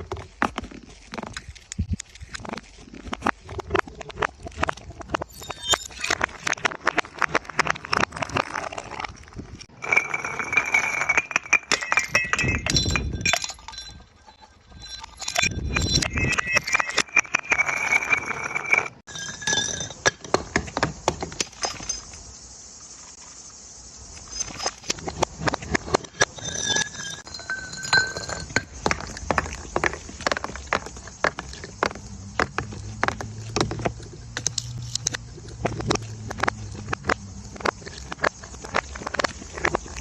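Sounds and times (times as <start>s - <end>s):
glass bottles shattering: 5.2s - 6.6s, 9.8s - 20.4s, 21.4s - 22.0s, 26.2s - 29.6s.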